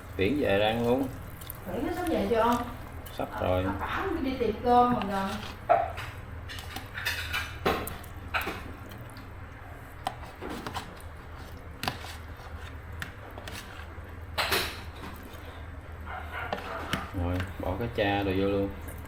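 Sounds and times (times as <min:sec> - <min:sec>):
utensils clinking against pots: 0:00.2 - 0:08.9, 0:14.3 - 0:15.2
utensils clattering: 0:00.2 - 0:09.1, 0:14.4 - 0:19.0.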